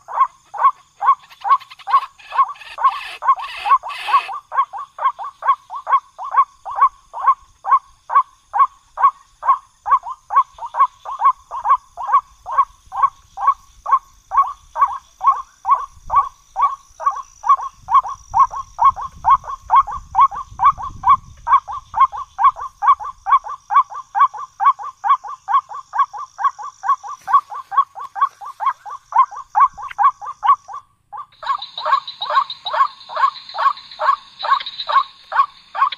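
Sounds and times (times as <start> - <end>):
bird croaking call: 0.0 - 35.9.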